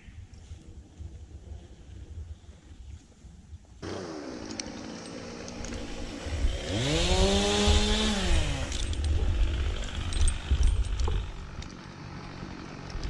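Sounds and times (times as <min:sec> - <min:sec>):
chainsaw idling and revving: 0:03.8 - 0:13.0.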